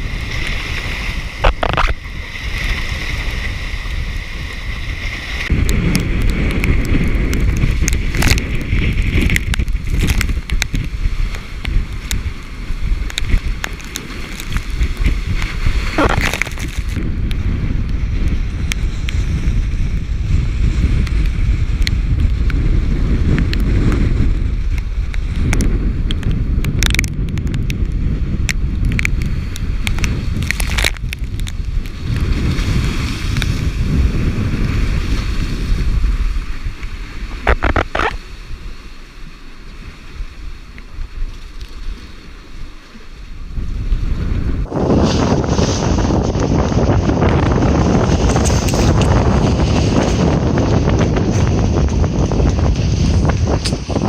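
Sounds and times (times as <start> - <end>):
wind buffeting microphone: 0.0 - 54.0
knocks and pops: 1.4 - 2.0, 5.6 - 10.9, 16.0 - 17.0, 25.4 - 27.8, 28.4 - 31.6, 37.4 - 38.2.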